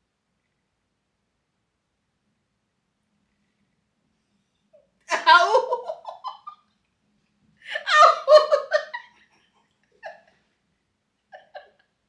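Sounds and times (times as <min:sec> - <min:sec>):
person laughing hard: 0:05.1 - 0:06.5, 0:07.7 - 0:09.0.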